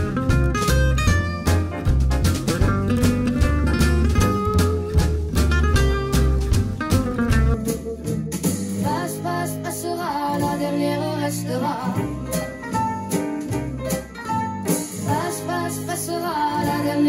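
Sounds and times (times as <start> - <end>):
guitar: 0.0 - 17.0
person singing: 8.8 - 12.4, 15.0 - 17.0.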